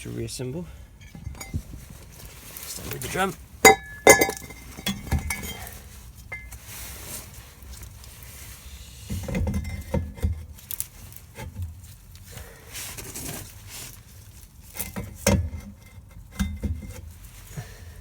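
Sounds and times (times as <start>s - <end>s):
metal brake parts knocking: 1.0s - 2.0s, 3.6s - 5.6s.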